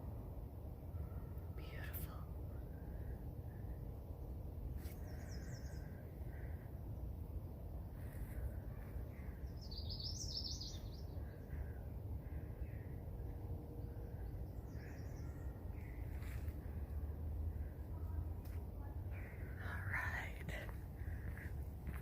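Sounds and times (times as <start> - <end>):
steady low rumble: 0.0 - 22.0
birds singing and chirping: 9.1 - 11.4.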